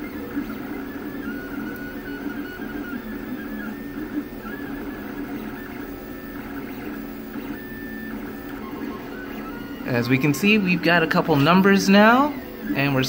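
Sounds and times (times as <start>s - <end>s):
steady printer hum: 0.0s - 13.0s
stepper motors whining: 0.0s - 13.0s.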